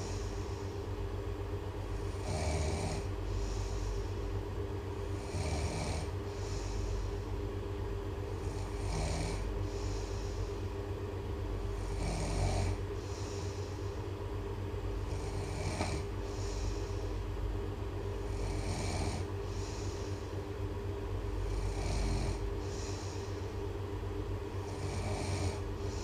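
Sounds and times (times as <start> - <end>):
steady low drone: 0.0 - 12.0, 12.6 - 26.0
person snoring: 2.0 - 4.1, 5.1 - 7.3, 8.4 - 10.6, 11.8 - 13.8, 15.0 - 17.0, 18.2 - 20.3, 21.4 - 23.4, 24.5 - 26.0.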